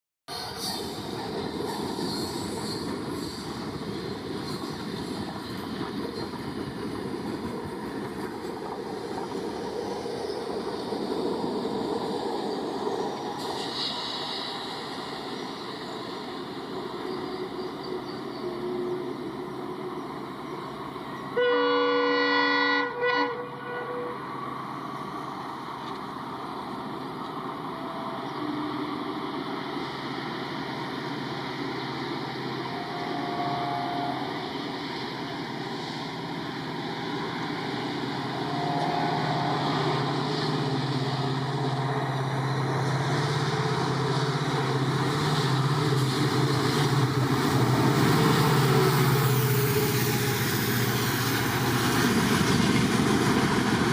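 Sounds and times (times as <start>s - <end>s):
diesel locomotive engine hum: 0.3s - 53.9s
train rumbling: 0.3s - 53.9s
locomotive horn blast: 21.4s - 24.3s, 32.7s - 34.5s, 38.3s - 40.2s.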